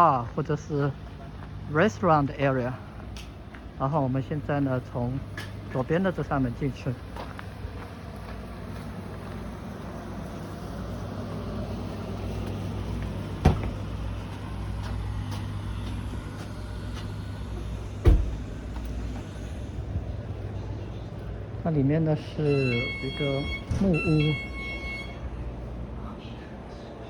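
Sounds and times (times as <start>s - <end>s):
sharp door knocks: 13.4s - 13.9s, 18.0s - 18.4s
low rumble: 13.7s - 21.6s.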